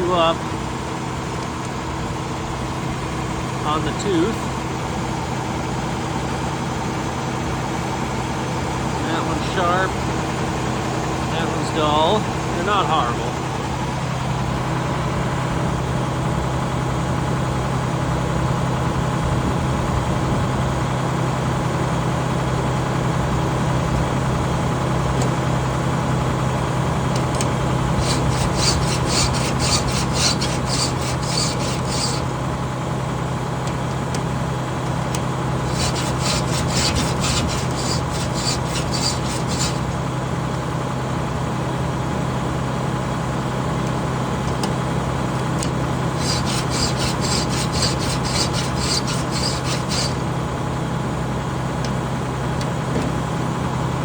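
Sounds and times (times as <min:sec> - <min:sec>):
low engine hum: 0:00.0 - 0:54.0
file rasping on saw teeth: 0:28.0 - 0:32.3, 0:35.7 - 0:40.0, 0:45.6 - 0:50.3.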